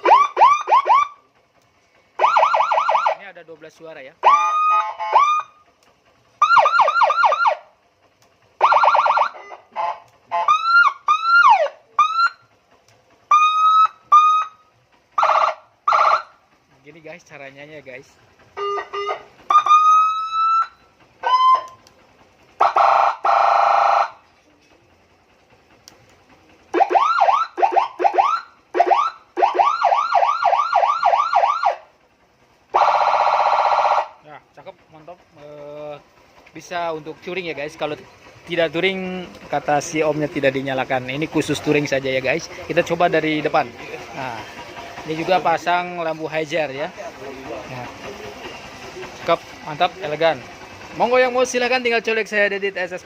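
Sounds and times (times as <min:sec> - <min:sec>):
electronic police siren: 0:00.0 - 0:01.2, 0:02.2 - 0:03.2, 0:04.2 - 0:05.6, 0:06.4 - 0:07.7, 0:08.6 - 0:09.7, 0:10.3 - 0:12.5, 0:13.3 - 0:14.6, 0:18.6 - 0:21.8, 0:22.6 - 0:24.2, 0:26.7 - 0:31.9, 0:32.8 - 0:34.2.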